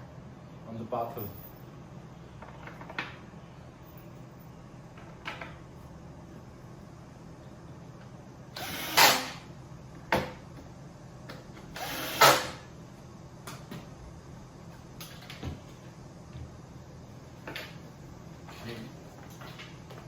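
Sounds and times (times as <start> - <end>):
power driver driving screws: 8.6 - 9.4, 11.8 - 12.6.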